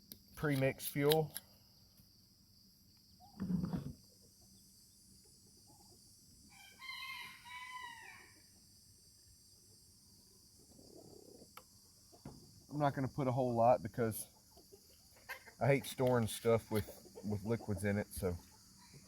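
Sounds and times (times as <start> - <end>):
rooster crowing: 6.5 - 8.4.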